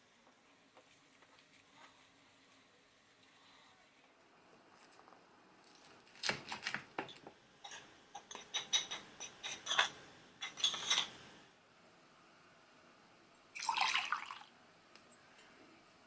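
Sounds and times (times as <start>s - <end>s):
kitchen utensils clinking and rattling: 7.7s - 11.2s.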